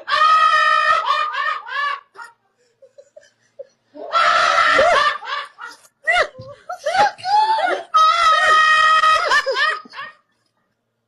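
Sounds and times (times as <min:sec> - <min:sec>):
high-pitched voice crying out: 0:04.0 - 0:10.2.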